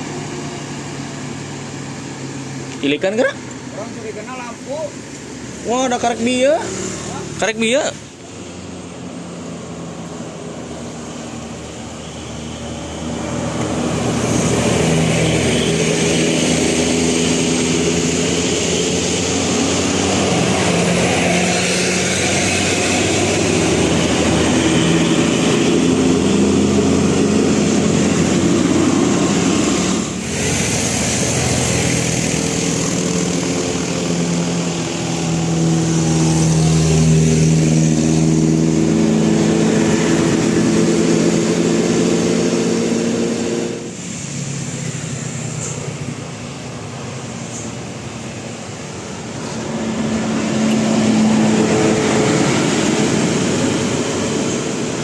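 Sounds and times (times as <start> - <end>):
large diesel engine running: 0.0 - 55.0
tyre and road noise: 0.0 - 55.0.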